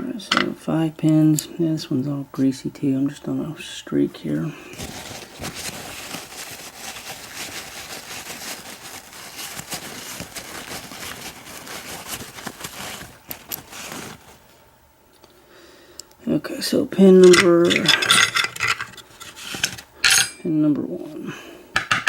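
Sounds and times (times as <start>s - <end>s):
padlock parts rustling and clicking: 17.3s - 20.3s.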